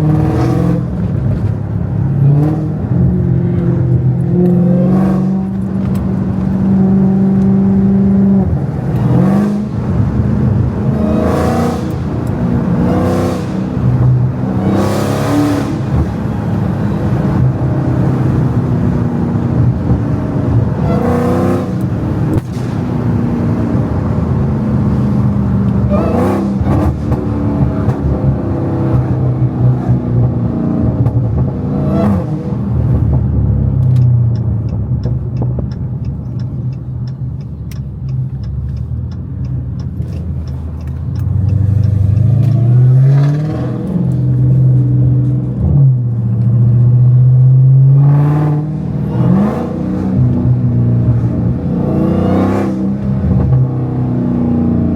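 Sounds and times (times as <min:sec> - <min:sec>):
car engine revving: 0:00.0 - 0:54.9
exhaust pops and crackles: 0:21.8 - 0:23.3, 0:32.8 - 0:42.8
light ticking: 0:33.8 - 0:42.6.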